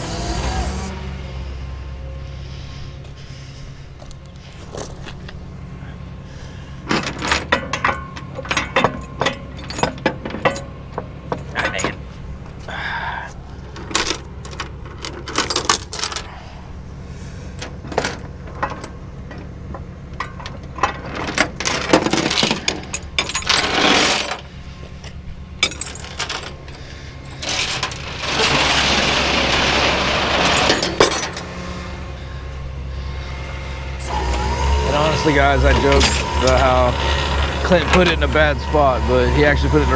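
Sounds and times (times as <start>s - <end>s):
loud rushing noise: 0.0s - 1.6s
truck engine idling: 0.0s - 23.7s, 24.4s - 39.9s
chains clinking and rattling: 6.9s - 12.2s, 13.7s - 16.3s, 20.2s - 32.0s, 33.2s - 39.9s.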